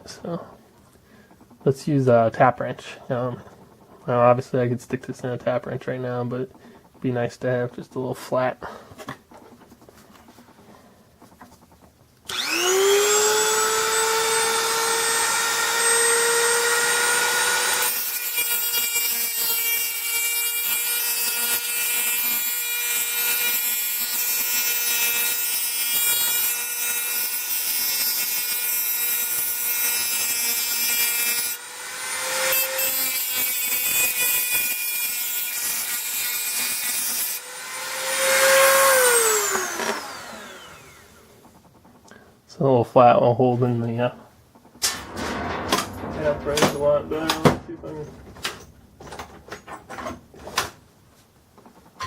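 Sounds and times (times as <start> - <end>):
rotary tool whine: 10.2 - 18.0, 37.3 - 42.1
rotary tool grinding metal: 10.5 - 41.7.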